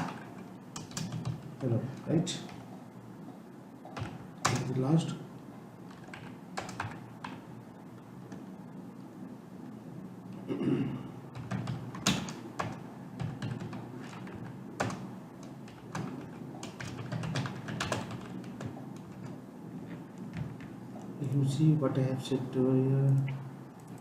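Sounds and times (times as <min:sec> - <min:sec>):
typing on computer keyboard: 0:00.0 - 0:01.5, 0:03.9 - 0:04.8, 0:05.9 - 0:07.4, 0:11.4 - 0:19.4.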